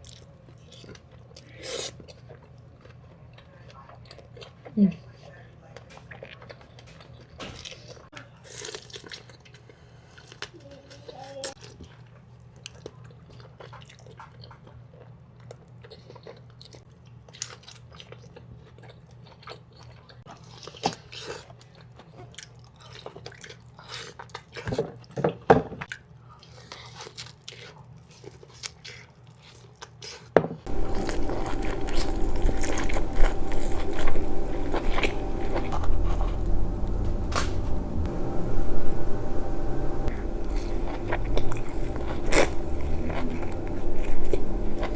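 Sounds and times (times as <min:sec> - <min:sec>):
wet chewing and crunching: 0:00.0 - 0:37.5, 0:40.1 - 0:44.9
steady hum with tones: 0:30.7 - 0:44.9.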